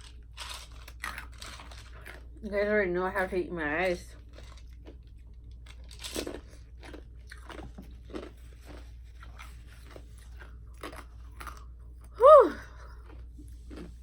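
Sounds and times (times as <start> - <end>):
ice being crunched and chewed: 0.0 - 2.5, 4.2 - 14.0.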